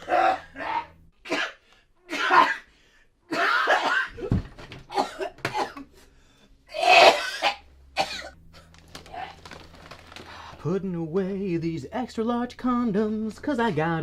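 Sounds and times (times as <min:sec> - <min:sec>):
person coughing: 0:01.2 - 0:02.7, 0:03.3 - 0:04.3, 0:04.9 - 0:06.0, 0:06.7 - 0:08.4.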